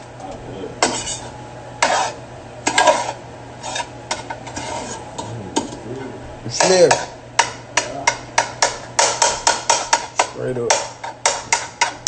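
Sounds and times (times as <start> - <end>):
utensil scraping a pan: 0.8 - 5.8, 8.6 - 12.0.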